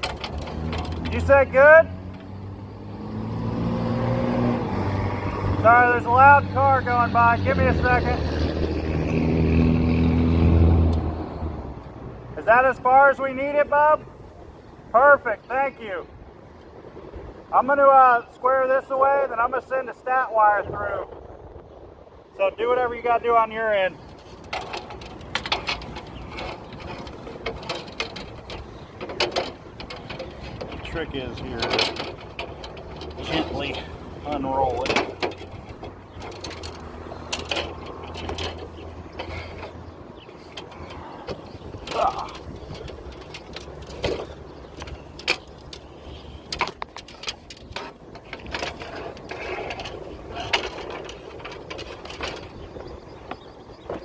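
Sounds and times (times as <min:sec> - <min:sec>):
handling clicks taps and rustles: 0:00.0 - 0:02.4, 0:23.2 - 0:54.0
tubing scraping and rubbing: 0:00.0 - 0:11.3, 0:23.1 - 0:54.0.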